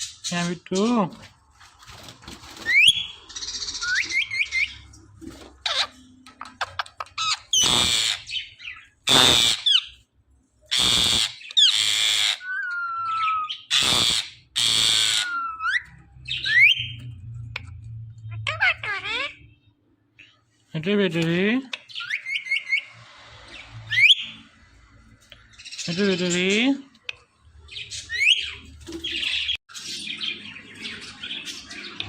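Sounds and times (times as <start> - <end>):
parrot whistles and chirps: 2.7 - 4.8, 10.8 - 17.0, 23.8 - 24.4
parrot harsh squawks: 7.2 - 10.0, 10.7 - 16.9, 18.3 - 19.6.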